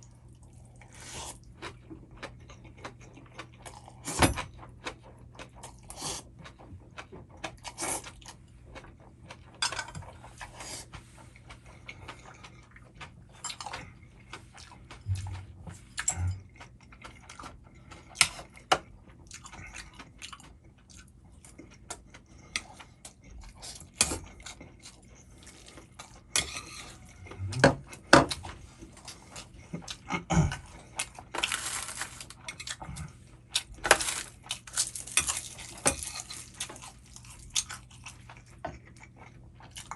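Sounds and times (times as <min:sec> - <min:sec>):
utensils clicking and scraping dish: 0:09.6 - 0:10.6, 0:23.6 - 0:30.0, 0:30.6 - 0:36.9
mouth sounds of eating: 0:26.9 - 0:31.3.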